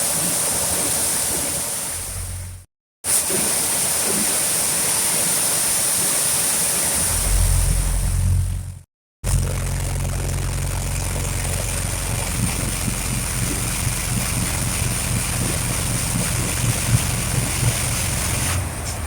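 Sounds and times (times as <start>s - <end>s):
diesel engine drone with whine: 7.0s - 19.0s.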